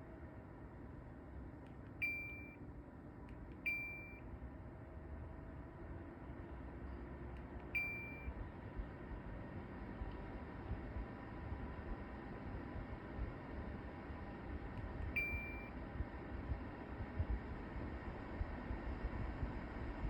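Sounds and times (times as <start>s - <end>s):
control panel beeps: 2.0s - 2.6s, 3.6s - 4.2s, 7.8s - 8.3s, 15.2s - 15.7s
fan rumbling vibration: 4.4s - 20.0s.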